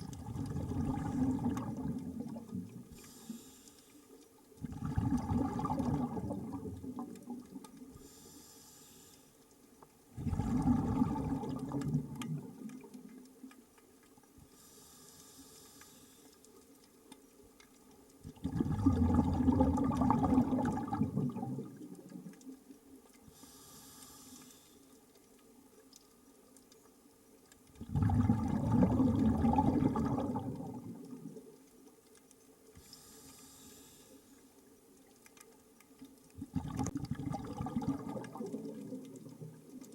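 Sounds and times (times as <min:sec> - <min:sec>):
exhaled bubbles rushing: 0:00.0 - 0:02.9, 0:04.6 - 0:07.6, 0:10.2 - 0:13.0, 0:18.2 - 0:22.4, 0:27.8 - 0:31.5, 0:36.4 - 0:39.9
regulator hiss on inhale: 0:02.9 - 0:04.2, 0:07.9 - 0:09.5, 0:14.4 - 0:16.6, 0:23.3 - 0:25.0, 0:32.8 - 0:34.5.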